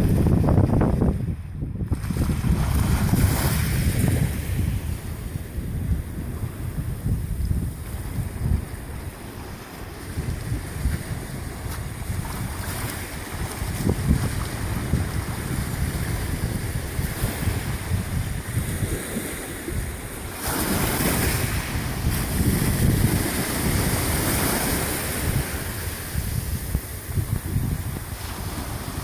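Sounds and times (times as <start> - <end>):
wind buffeting microphone: 0.0 - 29.0
sea waves: 1.9 - 29.0.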